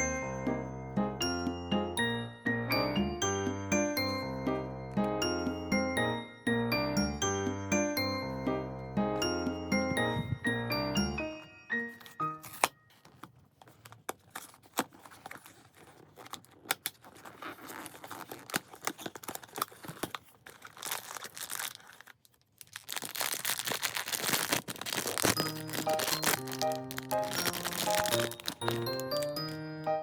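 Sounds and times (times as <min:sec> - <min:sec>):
background music with melody: 0:00.0 - 0:12.9, 0:25.3 - 0:30.0
crinkly packaging being torn open: 0:12.4 - 0:29.6.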